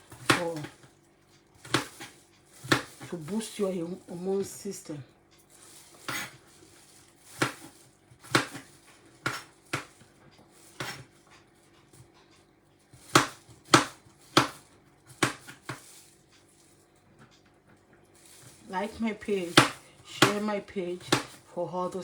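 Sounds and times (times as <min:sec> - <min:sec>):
knife chopping on cutting board: 0:00.1 - 0:00.8, 0:01.6 - 0:03.1, 0:06.0 - 0:06.4, 0:07.2 - 0:10.0, 0:10.6 - 0:11.1, 0:12.9 - 0:16.0, 0:18.3 - 0:21.5.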